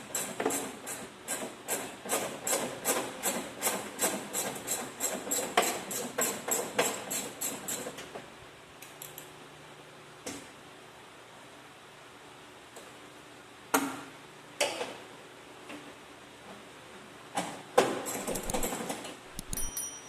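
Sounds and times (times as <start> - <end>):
ratchet hand tool clicking: 18.3 - 18.7, 19.3 - 19.8.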